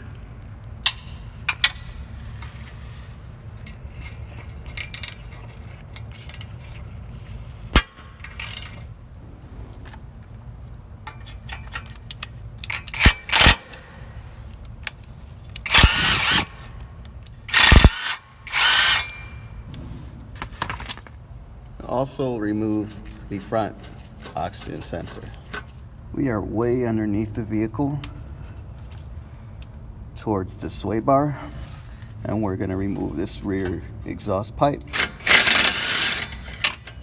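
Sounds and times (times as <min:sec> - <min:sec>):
power tool undoing bolts: 0:11.1 - 0:14.0, 0:15.5 - 0:16.8, 0:17.5 - 0:19.5, 0:34.9 - 0:37.0.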